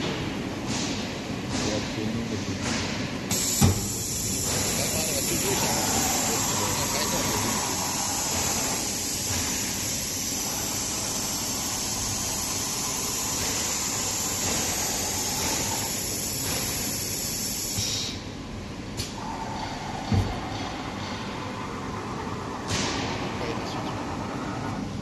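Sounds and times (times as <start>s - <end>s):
glass edging machine hissing: 3.4s - 18.1s.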